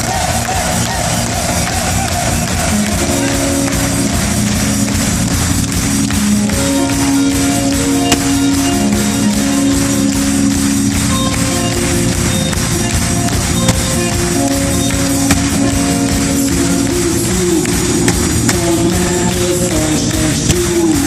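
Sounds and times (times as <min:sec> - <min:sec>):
live band playing instrumental: 0:00.4 - 0:21.0.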